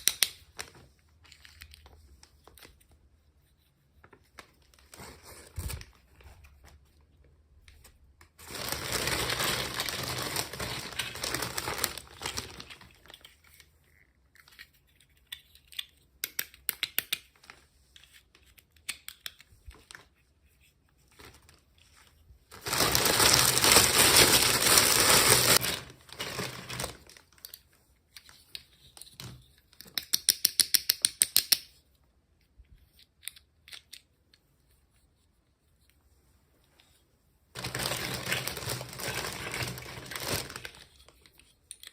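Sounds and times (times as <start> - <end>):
packaging crinkled and torn: 8.4 - 13.3, 22.5 - 27.6, 37.6 - 41.1.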